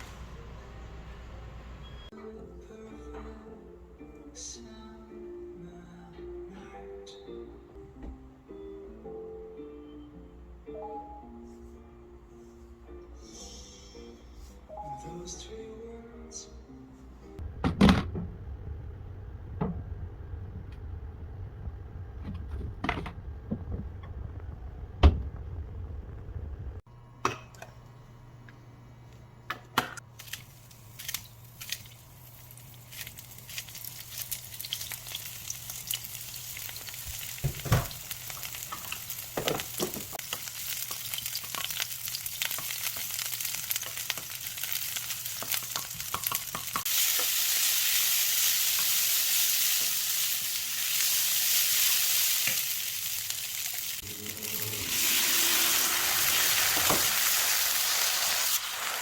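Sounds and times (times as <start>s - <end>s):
food sizzling in a pan: 30.5s - 59.0s.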